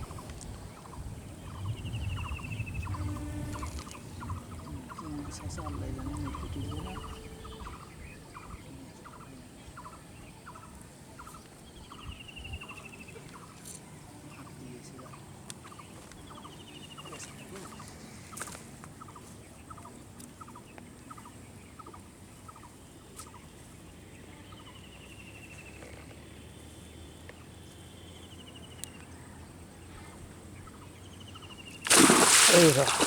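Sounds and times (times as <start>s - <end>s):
rapid falling bird trills: 31.8s - 33.0s.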